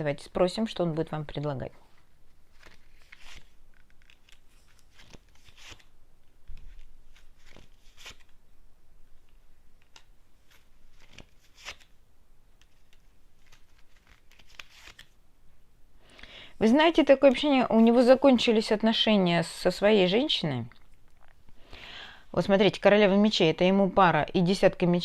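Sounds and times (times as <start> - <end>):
cards shuffling: 2.3 - 8.4, 9.8 - 12.0, 12.6 - 15.2.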